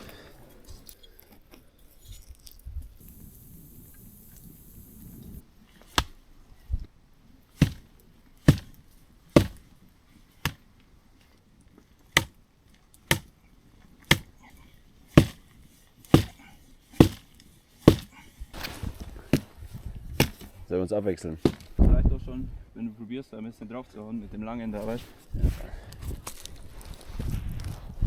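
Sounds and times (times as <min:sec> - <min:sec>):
firewood being chopped: 0:04.0 - 0:06.2, 0:07.6 - 0:09.7, 0:10.4 - 0:10.7, 0:12.1 - 0:12.4, 0:13.0 - 0:13.4, 0:14.0 - 0:14.5, 0:15.1 - 0:20.6, 0:21.4 - 0:21.8.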